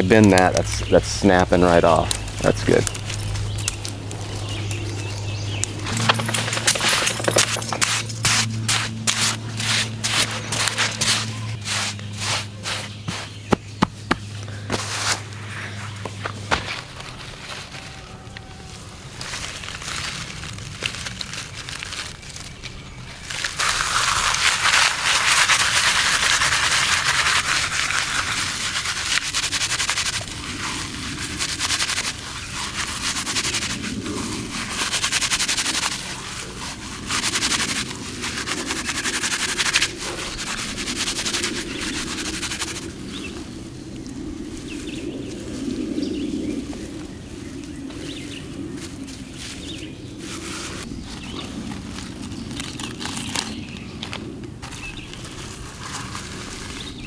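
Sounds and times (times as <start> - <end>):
twigs snapping: 0.0 - 9.5, 19.1 - 26.4, 50.4 - 57.0
twigs and leaves rustling: 0.0 - 57.0.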